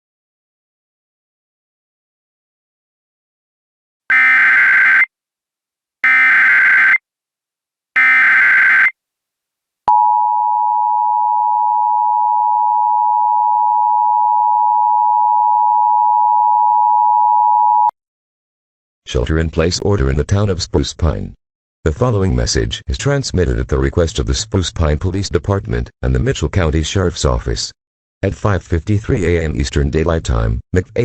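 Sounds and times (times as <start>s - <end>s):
two-tone alert signal: 4.1s - 5.1s, 6.0s - 7.0s, 8.0s - 8.9s
warbling data bursts: 6.0s - 7.0s, 8.0s - 8.9s.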